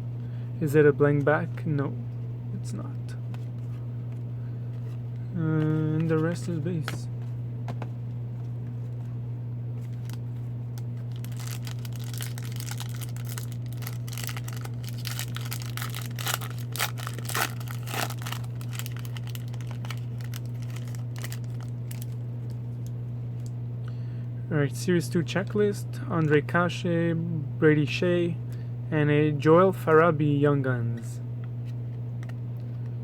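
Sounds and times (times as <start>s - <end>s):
steady low hum: 0.0s - 33.0s
wrapper tearing and crinkling: 9.8s - 10.2s, 10.8s - 22.2s.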